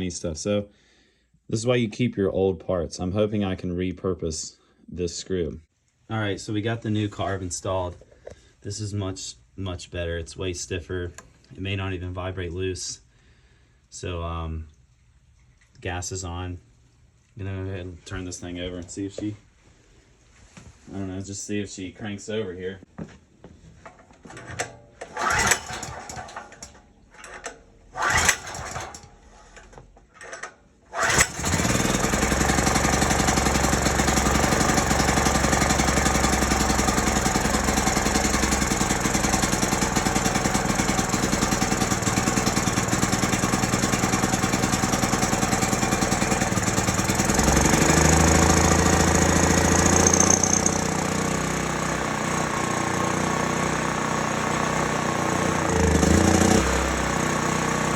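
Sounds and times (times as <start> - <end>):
portable generator engine cranking: 23.8 - 57.9
generator engine running and surging: 24.4 - 27.4, 28.0 - 29.1, 31.0 - 57.9.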